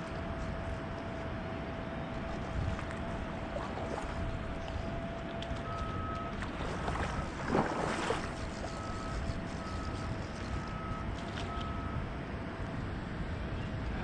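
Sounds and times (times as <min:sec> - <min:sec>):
wind on microphone: 0:02.1 - 0:11.4
water splashing surge: 0:03.4 - 0:04.5, 0:06.4 - 0:08.7
river flowing: 0:06.3 - 0:08.8.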